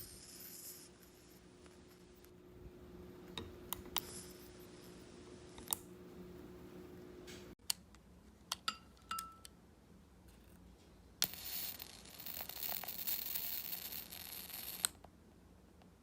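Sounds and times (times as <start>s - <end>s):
electric arc crackling hiss: 11.2s - 14.9s.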